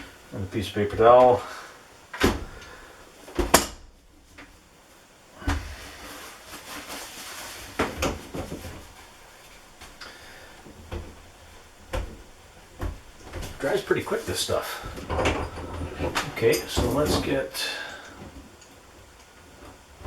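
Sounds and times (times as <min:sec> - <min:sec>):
paper towel rustling: 0:04.2 - 0:20.0
tools knocking and clunking: 0:10.6 - 0:18.8.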